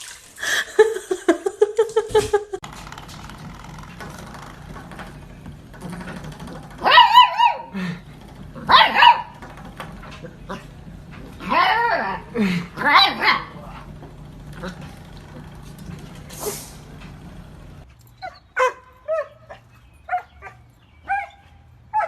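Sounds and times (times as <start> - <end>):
dog barking: 6.8 - 7.7, 8.6 - 9.4, 12.8 - 13.8, 18.3 - 22.0.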